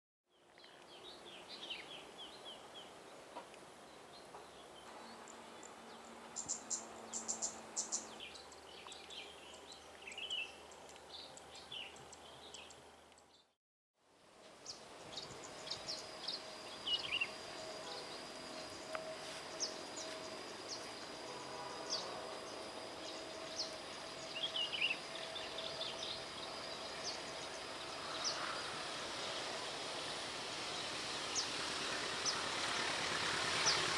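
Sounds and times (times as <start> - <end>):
small birds chirping: 0.6 - 13.5
high insect whine: 14.6 - 33.9.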